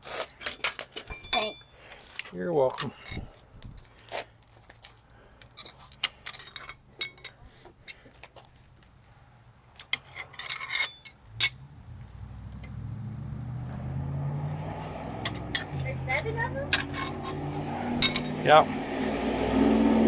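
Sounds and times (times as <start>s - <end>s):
metal parts clinking: 0.4s - 3.4s, 4.8s - 8.1s, 9.8s - 11.6s, 16.7s - 18.4s
low hum: 11.1s - 20.0s.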